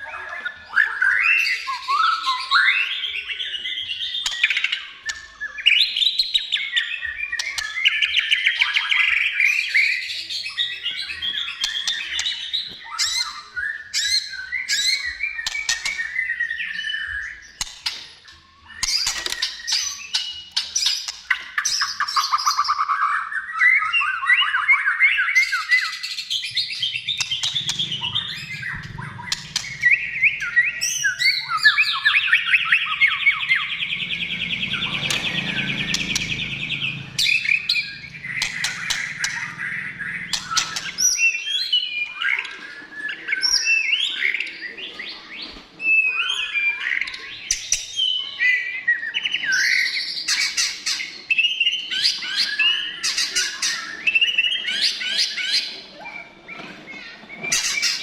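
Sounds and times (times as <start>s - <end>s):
bird singing whistles and trills: 0.0s - 58.0s
low hum: 26.5s - 41.2s.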